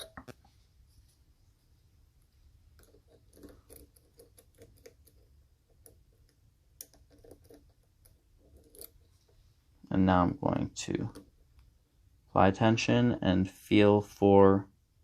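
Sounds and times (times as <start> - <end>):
lock pick clicking: 5.8 - 9.0.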